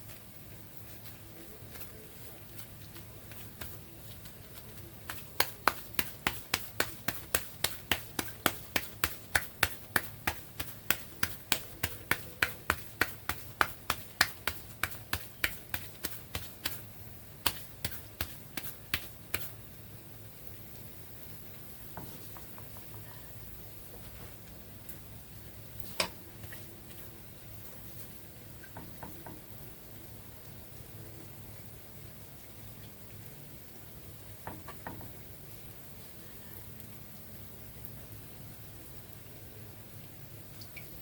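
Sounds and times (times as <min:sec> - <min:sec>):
sharp taps on hard surface: 0:05.1 - 0:16.8.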